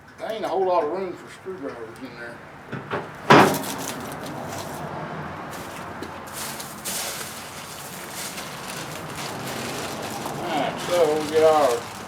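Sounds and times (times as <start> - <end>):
light knocks: 2.7 - 4.8
rustling and scraping: 3.0 - 12.0.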